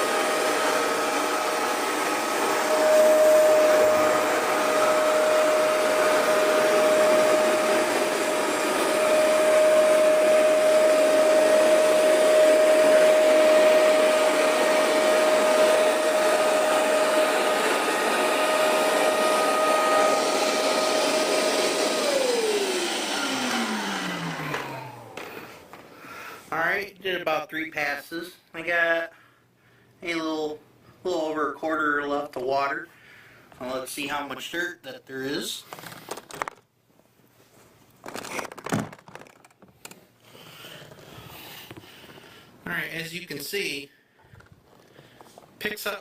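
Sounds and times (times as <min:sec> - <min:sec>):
carpet cleaner motor whine: 0:00.0 - 0:25.8.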